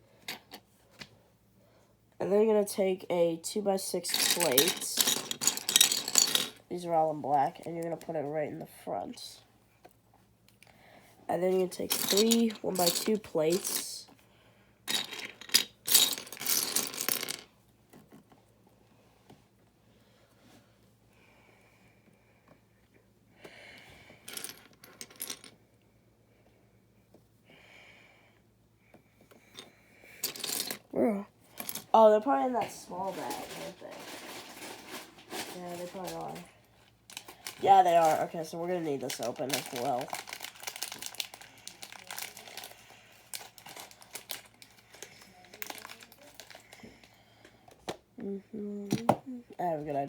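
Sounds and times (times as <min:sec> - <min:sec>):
plastic bricks clattering: 0:04.0 - 0:06.6
plastic bag crinkling: 0:32.9 - 0:46.8.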